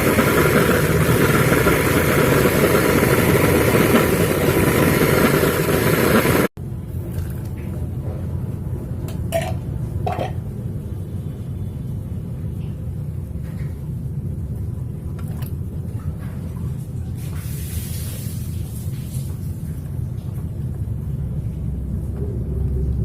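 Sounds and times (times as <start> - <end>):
steady low rumble: 0.0 - 6.9, 19.4 - 23.0
metal utensil clinking on pan: 9.1 - 10.4.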